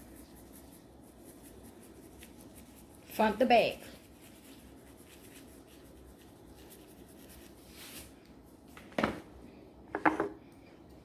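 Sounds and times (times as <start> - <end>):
shaker rattle: 0.0 - 8.1
shaker hiss: 0.0 - 8.2
seasoning rubbing on chicken: 0.0 - 8.7.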